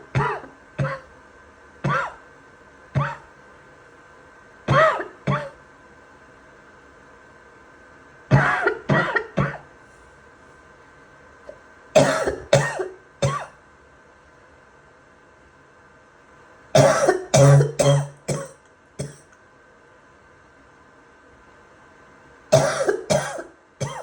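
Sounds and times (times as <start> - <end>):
person coughing: 0.1 - 1.1, 1.8 - 2.2, 3.0 - 3.3, 4.7 - 5.6, 8.3 - 9.7, 12.0 - 13.6, 16.8 - 19.3, 22.5 - 24.0.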